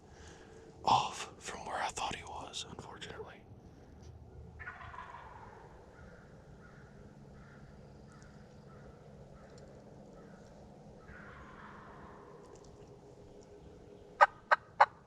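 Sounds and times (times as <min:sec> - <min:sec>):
distant turkey gobbling: 0:04.6 - 0:12.6, 0:13.6 - 0:15.0.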